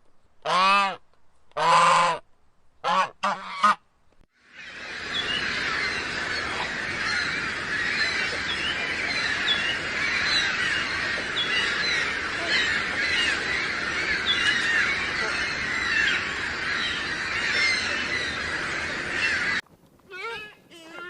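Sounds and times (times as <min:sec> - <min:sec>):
flock of birds calling: 0:04.4 - 0:19.6.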